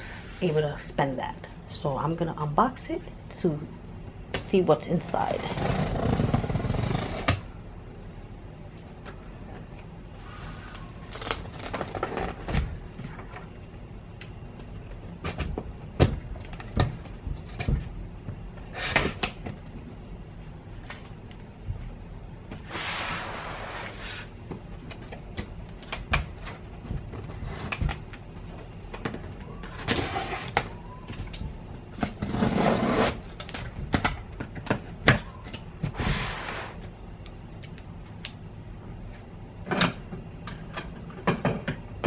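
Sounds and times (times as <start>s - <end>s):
cardboard tape tearing: 11.1s - 12.4s.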